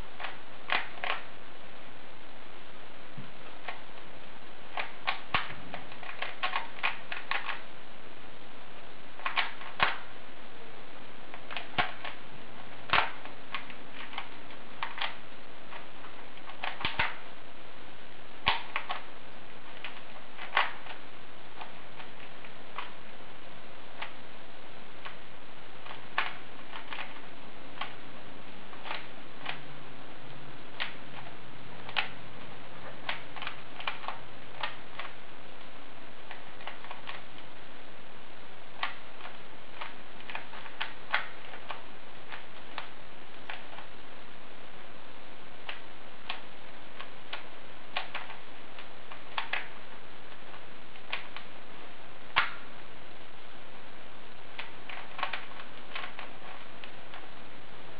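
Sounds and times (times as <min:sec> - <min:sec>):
plastic puzzle cube clicking: 0:00.2 - 0:01.3, 0:03.5 - 0:03.9, 0:04.7 - 0:07.7, 0:09.2 - 0:10.1, 0:11.3 - 0:17.2, 0:18.4 - 0:19.1, 0:19.7 - 0:21.0, 0:21.6 - 0:23.0, 0:24.0 - 0:24.2, 0:25.8 - 0:28.0, 0:28.7 - 0:29.6, 0:30.7 - 0:32.2, 0:32.9 - 0:35.2, 0:36.2 - 0:37.5, 0:38.7 - 0:43.9, 0:45.6 - 0:51.5, 0:52.3 - 0:52.7, 0:54.5 - 0:57.3.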